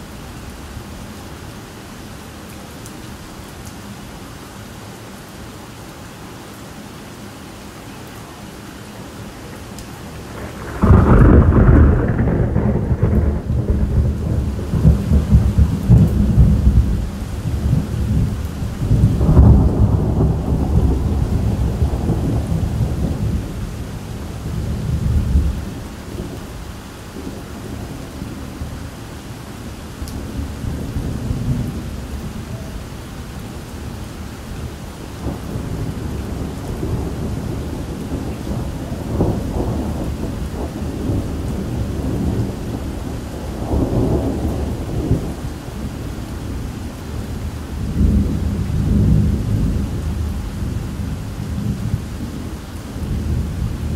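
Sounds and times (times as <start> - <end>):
steady rain: 0.0 - 53.9
thunder rolling: 10.1 - 26.4, 35.2 - 45.5.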